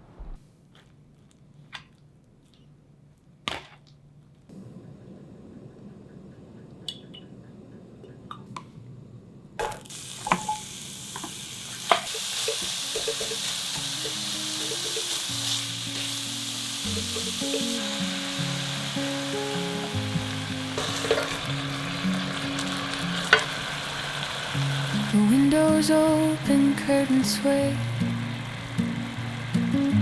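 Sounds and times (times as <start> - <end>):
food sizzling in a hot pan: 9.6 - 30.0
utensil clicking against pan: 11.9 - 15.1.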